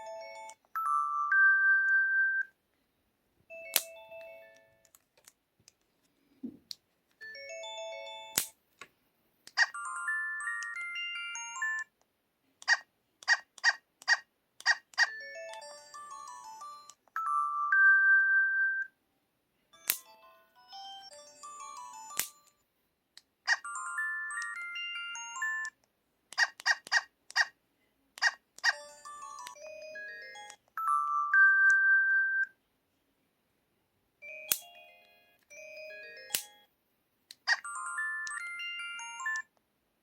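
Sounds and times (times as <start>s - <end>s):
phone electronic jingles and chimes: 0.0s - 2.5s, 7.2s - 8.4s, 9.6s - 12.0s, 14.7s - 18.9s, 19.8s - 22.6s, 23.5s - 25.8s, 28.2s - 32.5s, 34.2s - 36.7s, 37.5s - 39.6s.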